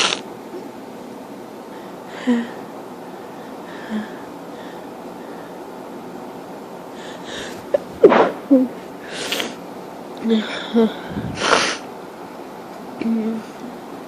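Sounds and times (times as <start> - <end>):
person sneezing: 0.0 - 0.2.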